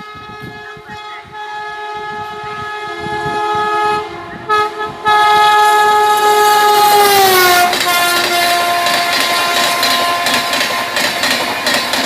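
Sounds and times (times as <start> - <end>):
train horn chord: 0.0 - 11.3
train clatter: 5.7 - 12.0.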